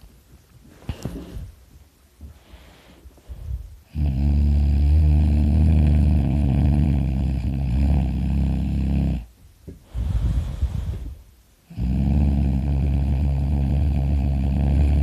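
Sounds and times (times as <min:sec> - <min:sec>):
person snoring loudly: 0:03.9 - 0:09.3, 0:11.7 - 0:15.0.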